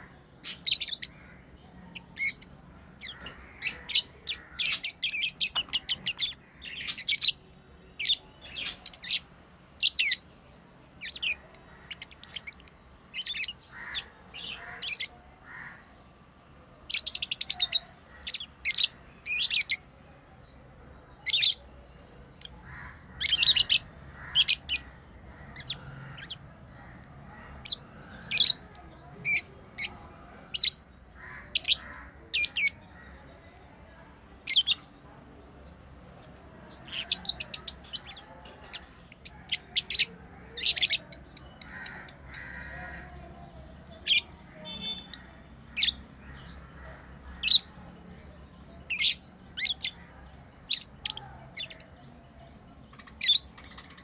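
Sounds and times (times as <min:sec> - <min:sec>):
lovebirds chirping: 0:00.0 - 0:54.0.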